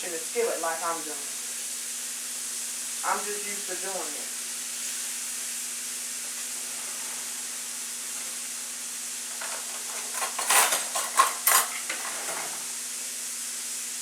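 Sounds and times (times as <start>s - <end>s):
meat sizzling in a skillet: 0.0s - 14.0s
utensil scraping a pan: 9.3s - 12.7s.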